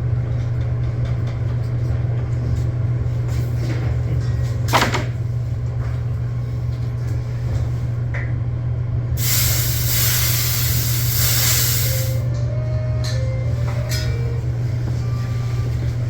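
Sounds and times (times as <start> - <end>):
low machine hum: 0.0 - 16.0
loud hiss of escaping gas: 9.2 - 12.3.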